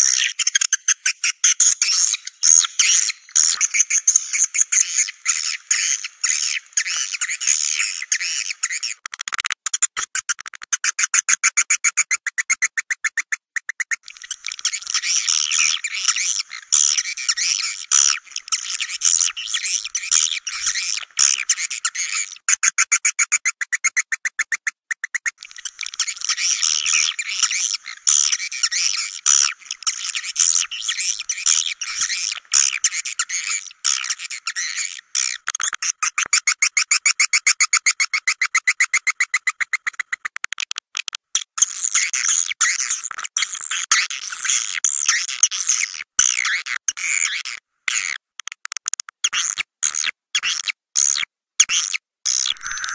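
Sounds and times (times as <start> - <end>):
swiftlet chattering chirps and clicks: 8.7 - 34.2.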